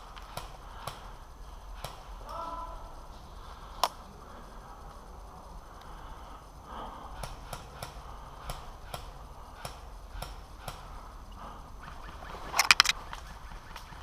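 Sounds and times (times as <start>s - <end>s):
sharp irregular clicks: 0.1s - 2.4s, 3.7s - 4.0s, 7.2s - 11.4s, 12.5s - 14.0s.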